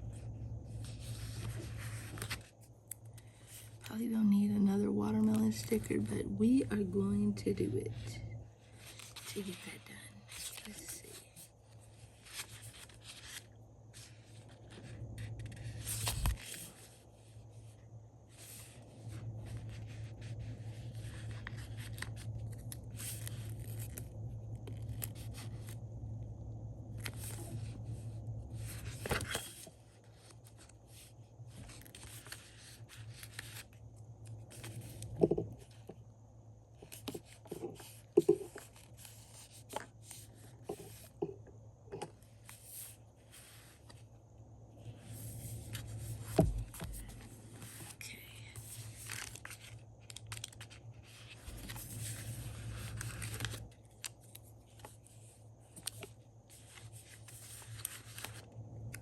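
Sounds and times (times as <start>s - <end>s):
low steady hum: 0.0s - 59.0s
paper and sticker rustling: 0.1s - 4.5s, 5.2s - 17.6s, 18.3s - 24.0s, 27.0s - 35.9s, 36.8s - 41.1s, 44.9s - 59.0s.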